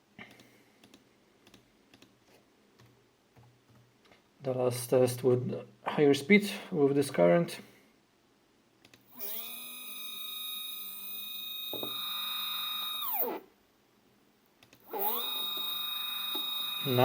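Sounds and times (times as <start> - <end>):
stepper motors whining: 9.1 - 13.4, 14.8 - 17.0.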